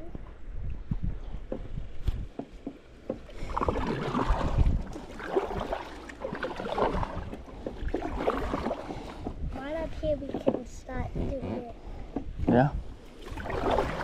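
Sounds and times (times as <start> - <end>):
paddle splashing in water: 2.4 - 9.4, 13.0 - 14.0.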